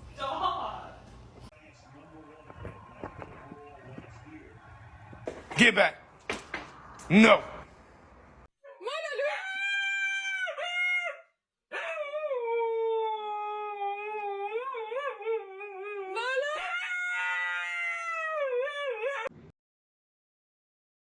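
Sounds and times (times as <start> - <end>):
dog howling: 8.9 - 19.3.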